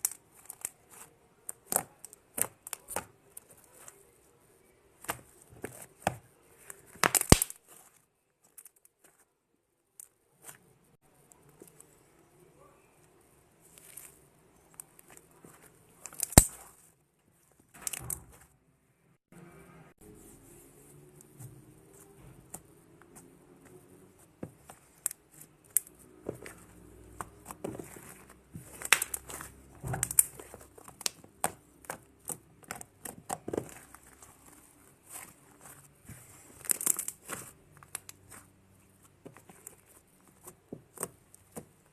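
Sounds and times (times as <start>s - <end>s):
slime crackling and popping: 6.9s - 7.8s, 24.8s - 35.4s.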